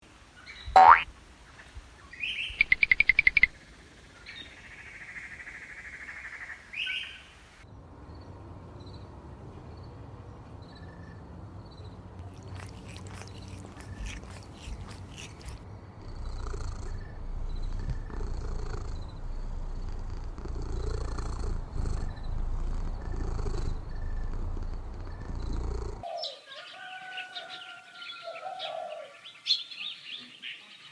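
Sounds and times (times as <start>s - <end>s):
birds chirping: 10.3s - 30.9s
patter of clicks: 12.2s - 17.0s
cat purring: 12.2s - 26.1s.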